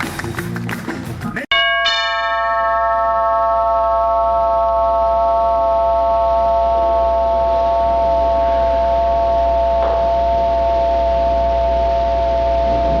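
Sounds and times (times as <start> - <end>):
steady electronic tones chord: 1.5 - 13.0
low hum: 3.2 - 13.0.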